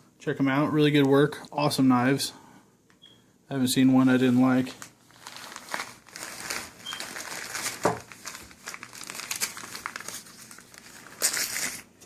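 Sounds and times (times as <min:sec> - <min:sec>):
packaging crinkling and rustling: 0:04.2 - 0:12.0.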